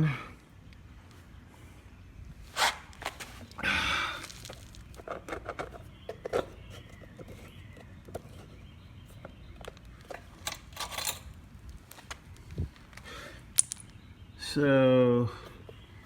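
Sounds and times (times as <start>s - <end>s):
handling clicks and knocks: 4.4s - 12.2s, 12.8s - 14.0s.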